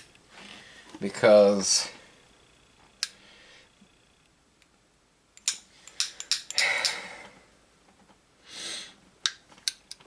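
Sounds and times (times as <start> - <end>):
metal tools clicking and rattling: 5.4 - 7.0.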